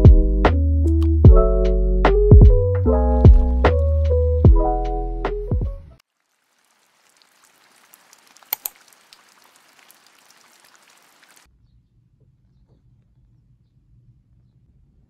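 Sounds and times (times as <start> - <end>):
light rain patter: 6.0 - 11.5
sharp clicks: 8.5 - 8.8.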